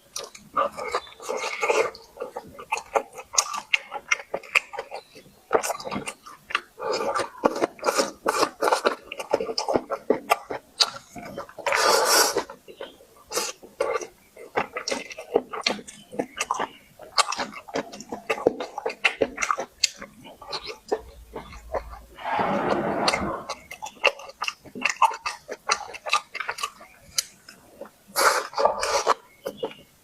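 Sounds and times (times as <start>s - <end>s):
chewing and mouth smacking: 0.1s - 22.1s, 23.8s - 29.9s
loud noisy burst: 22.2s - 23.6s.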